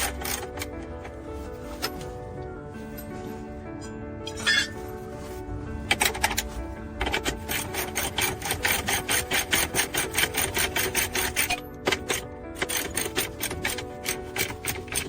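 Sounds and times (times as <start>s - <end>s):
background music with held tones: 0.0s - 15.0s
abrasive rasping on car bodywork: 4.3s - 11.6s.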